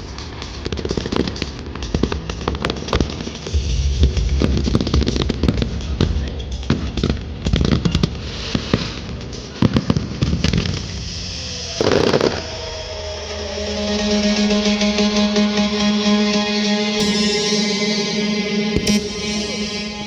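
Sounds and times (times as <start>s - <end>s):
music: 0.0s - 20.0s
fireworks bangs and crackles: 0.3s - 3.5s, 4.4s - 12.4s.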